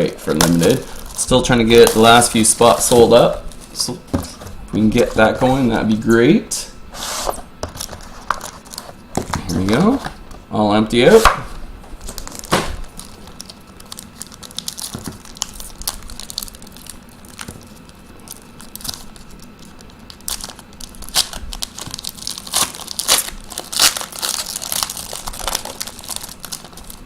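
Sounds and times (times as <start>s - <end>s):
card pack packaging crinkling: 0.3s - 3.9s, 7.7s - 10.0s, 12.0s - 27.0s.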